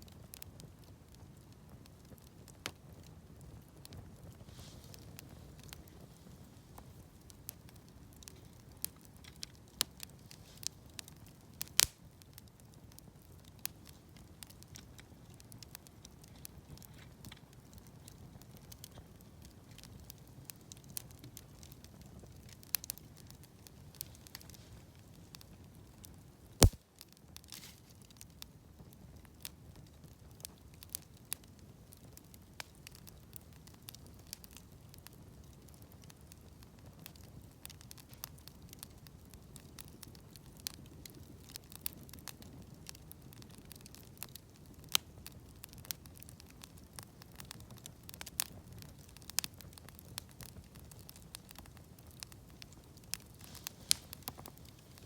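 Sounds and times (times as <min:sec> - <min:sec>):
campfire crackling: 0:00.0 - 0:55.0
loud crack of fire: 0:00.0 - 0:55.0
sharp pops of fire: 0:07.5 - 0:12.4, 0:26.6 - 0:28.3, 0:37.1 - 0:55.0.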